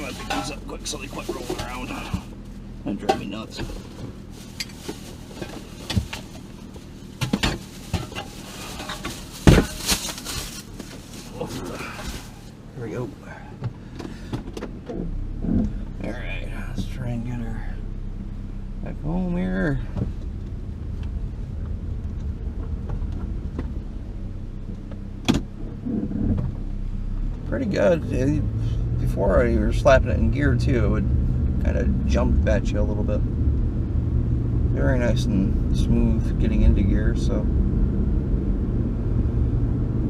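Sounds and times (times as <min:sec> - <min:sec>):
engine idling: 0:00.0 - 0:30.8.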